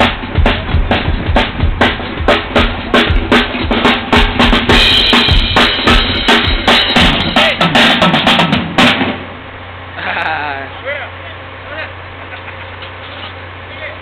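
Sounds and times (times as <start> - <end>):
drum kit groove: 0.0 - 9.4
steady low hum: 0.0 - 14.0.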